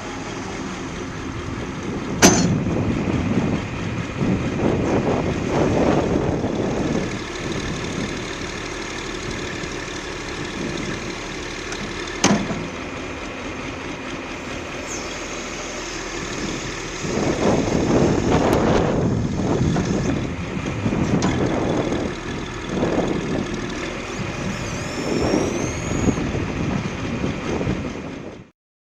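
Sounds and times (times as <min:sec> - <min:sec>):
diesel engine running: 0:00.0 - 0:28.5
sharp knock: 0:02.2 - 0:02.6.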